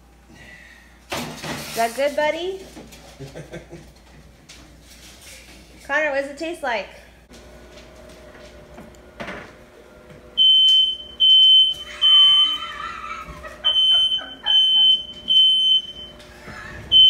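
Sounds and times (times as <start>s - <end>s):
smoke alarm beeping: 10.4s - 12.7s, 13.6s - 16.2s.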